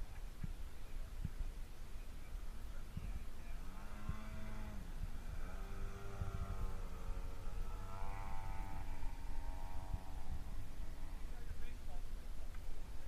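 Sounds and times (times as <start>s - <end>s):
low rumbling noise: 0.0s - 13.0s
model airplane motor running: 3.6s - 11.6s.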